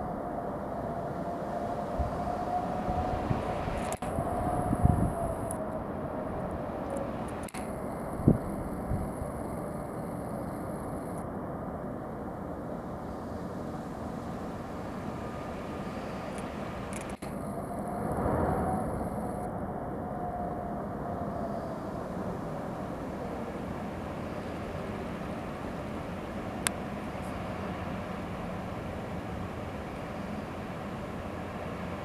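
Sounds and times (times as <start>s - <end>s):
outdoor rumble and hiss: 0.0s - 32.0s
sharp click: 7.3s - 7.8s.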